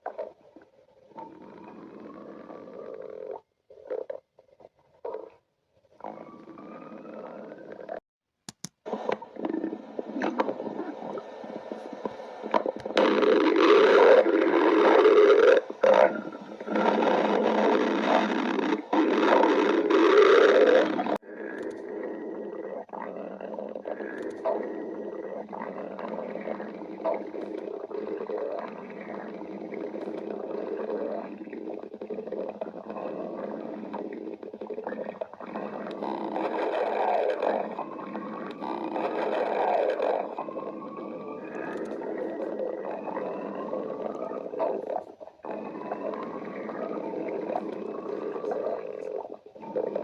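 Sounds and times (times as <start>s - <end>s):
stomach growling: 0.0s - 8.0s, 8.8s - 50.0s.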